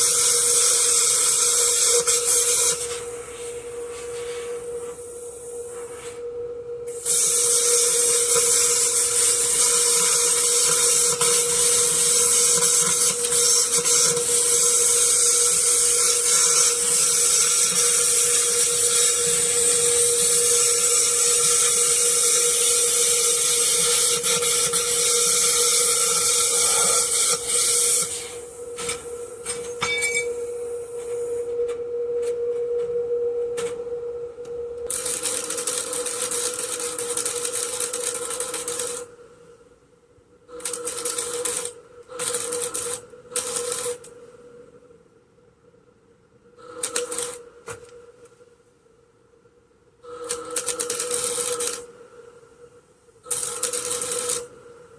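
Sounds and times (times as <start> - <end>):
high-pitched power tool: 0.0 - 5.9, 6.9 - 32.3, 33.6 - 39.1
steady hum: 0.0 - 54.9.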